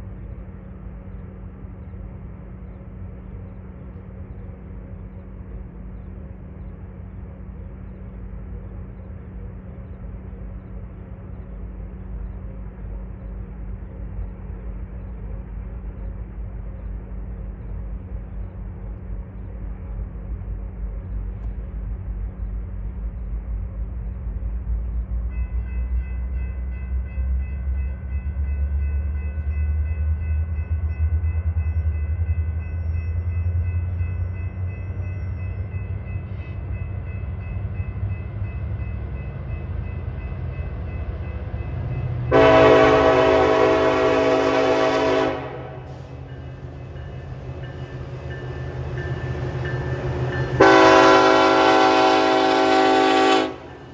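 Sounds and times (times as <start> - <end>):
diesel train engine rumble: 0.0 - 53.9
train horn chord: 42.2 - 46.4, 49.0 - 53.9.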